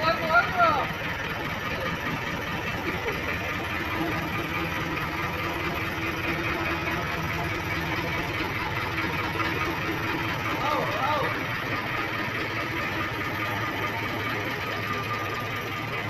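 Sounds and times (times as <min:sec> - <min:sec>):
diesel engine idling: 0:00.0 - 0:16.0.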